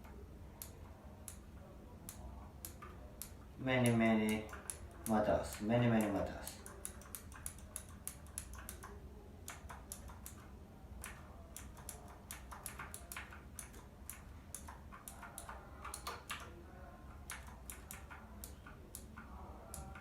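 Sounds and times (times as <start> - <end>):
mechanical keyboard keys clicking: 3.8 - 16.5.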